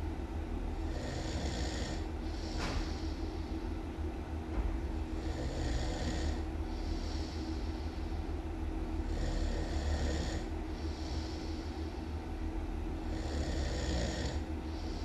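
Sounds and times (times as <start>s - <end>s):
person snoring loudly: 0.9s - 2.1s, 5.2s - 7.2s, 9.0s - 10.5s, 13.1s - 14.5s.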